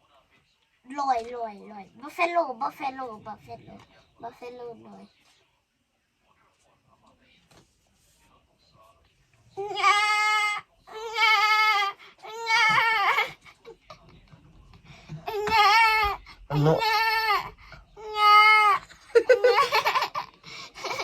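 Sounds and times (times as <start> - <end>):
high wavering animal cries: 9.6 - 13.3.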